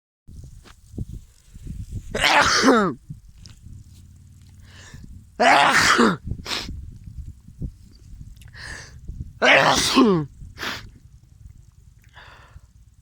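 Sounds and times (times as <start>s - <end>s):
person sneezing loudly: 2.1s - 3.0s, 5.4s - 6.7s, 9.4s - 10.8s.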